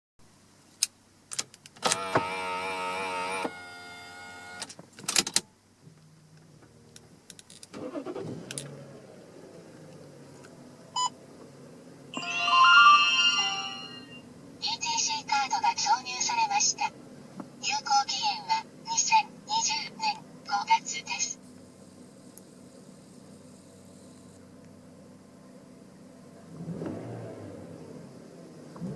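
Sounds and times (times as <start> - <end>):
loud sound rising in pitch: 12.2 - 14.3
wavering whine: 12.2 - 14.4.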